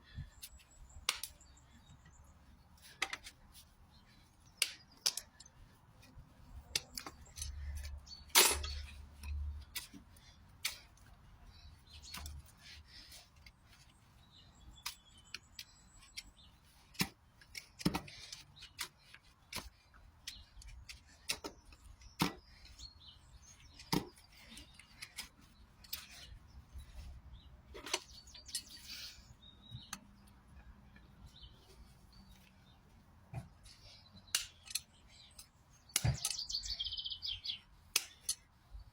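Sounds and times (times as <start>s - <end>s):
hoof-trimming tools snipping: 16.9s - 22.5s, 34.3s - 36.5s, 37.9s - 38.5s.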